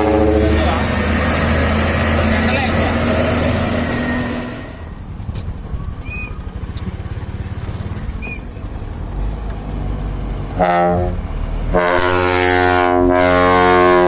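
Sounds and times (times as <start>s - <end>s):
air horn blasts: 0.0s - 0.7s, 10.6s - 14.0s
truck engine rumbling: 0.0s - 14.0s.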